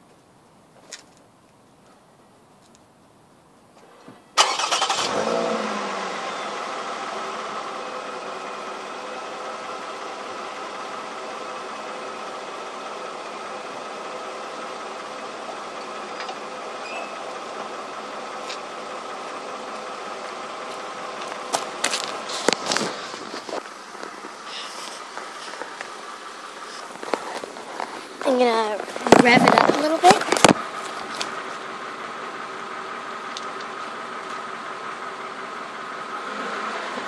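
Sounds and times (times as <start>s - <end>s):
car engine revving and idling: 4.4s - 37.0s.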